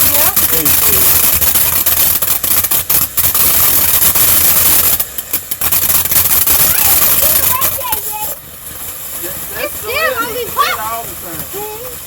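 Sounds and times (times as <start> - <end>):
firework cracks: 0.0 - 12.0
firework hissing: 0.0 - 12.0.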